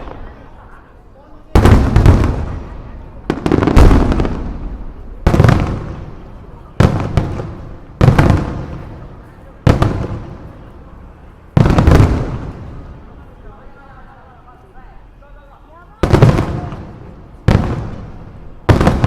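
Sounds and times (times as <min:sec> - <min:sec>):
firework booms with rumbling echo: 0:01.5 - 0:10.6, 0:11.5 - 0:13.0, 0:16.0 - 0:19.0.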